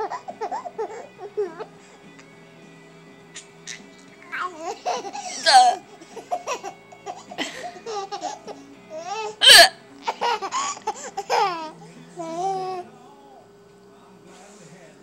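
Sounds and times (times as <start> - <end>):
baby laughing: 0.0 - 1.7, 3.4 - 12.8
woman hiccuping: 5.3 - 5.8, 9.4 - 9.8.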